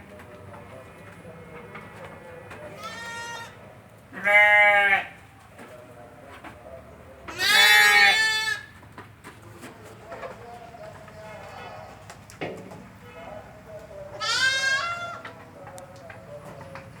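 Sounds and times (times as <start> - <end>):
goats bleating: 2.7 - 3.6, 4.2 - 5.2, 7.3 - 8.7, 14.2 - 15.2.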